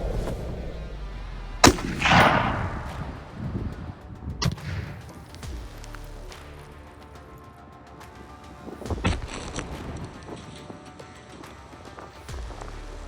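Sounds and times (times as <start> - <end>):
rolling explosion boom: 0.0 - 4.9
rifle shot crack: 1.6 - 5.2.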